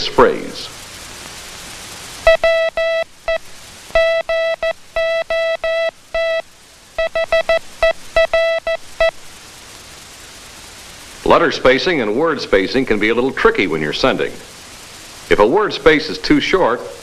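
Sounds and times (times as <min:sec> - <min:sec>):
morse code tone: 0:02.2 - 0:06.4, 0:07.0 - 0:09.1.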